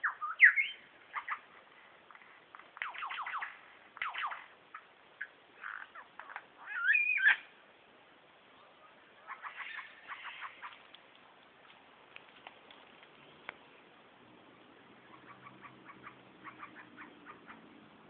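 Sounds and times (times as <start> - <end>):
bird singing mimicked calls: 0.0 - 1.5, 2.8 - 7.5, 9.2 - 10.8, 15.0 - 17.7.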